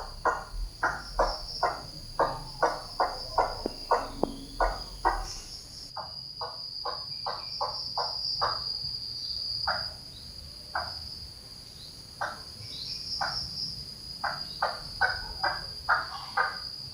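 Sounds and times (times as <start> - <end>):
bird calling: 0.0 - 5.9
high-pitched insect drone: 0.0 - 6.0.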